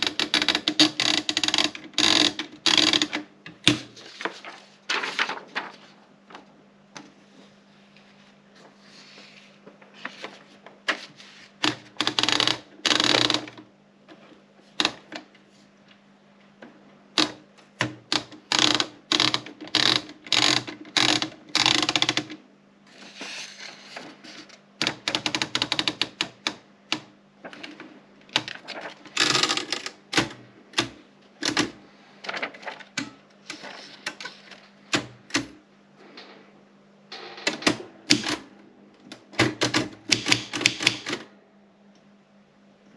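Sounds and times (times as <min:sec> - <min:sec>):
typewriter key strikes: 0:39.3 - 0:41.2.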